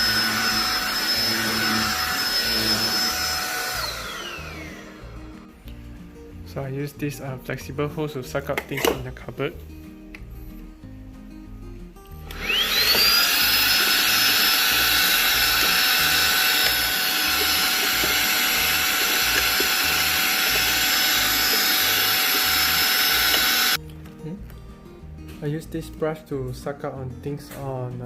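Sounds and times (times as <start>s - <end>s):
vacuum motor whining: 0.0s - 5.4s, 12.2s - 23.8s.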